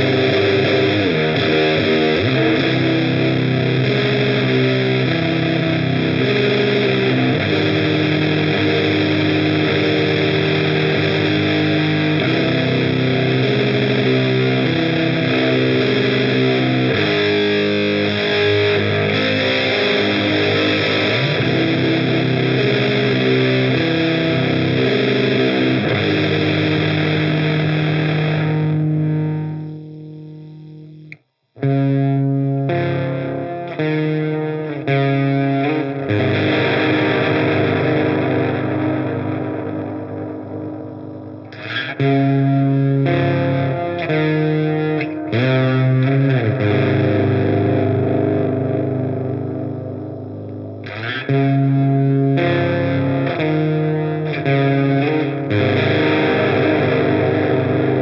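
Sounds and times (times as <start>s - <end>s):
fuzzy distorted electric guitar chords: 0.0s - 58.0s
click: 31.1s - 31.3s.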